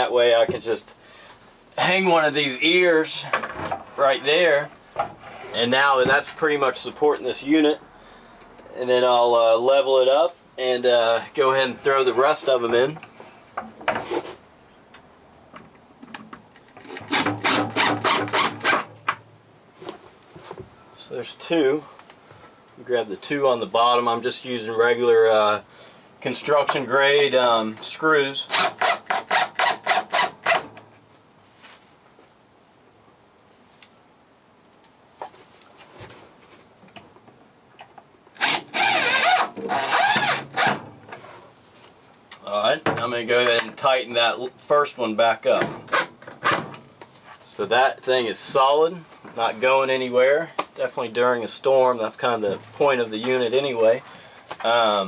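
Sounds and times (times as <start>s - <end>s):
screwdriver whirring: 16.8s - 18.9s, 38.4s - 40.8s
screwdriver rasping on wood screw: 28.5s - 30.6s, 38.4s - 40.7s.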